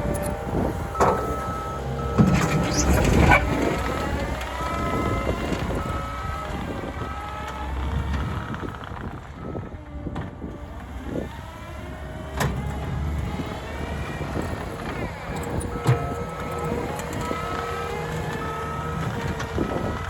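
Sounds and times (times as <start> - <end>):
diesel engine of earthmoving machine: 0.0 - 20.0
backup alarm beeps: 1.0 - 3.7.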